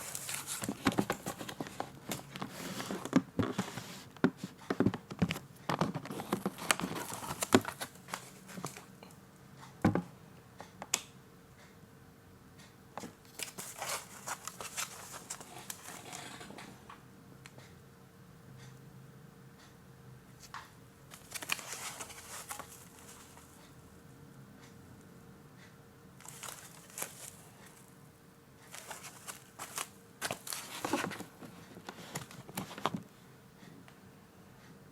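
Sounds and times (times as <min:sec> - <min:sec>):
packaging crinkling and rustling: 0:00.0 - 0:04.1, 0:04.8 - 0:08.9, 0:13.3 - 0:16.7, 0:21.1 - 0:23.6, 0:26.2 - 0:27.9, 0:28.7 - 0:33.1.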